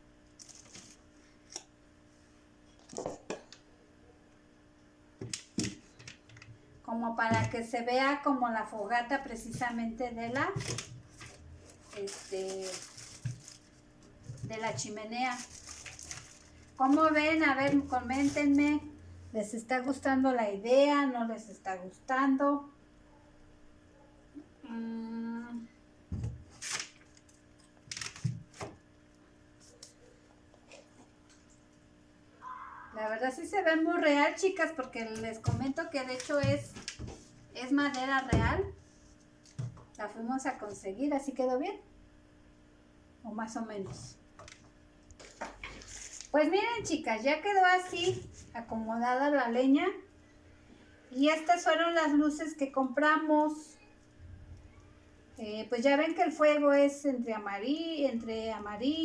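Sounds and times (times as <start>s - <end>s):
scraping rustles: 45.2s - 46.4s.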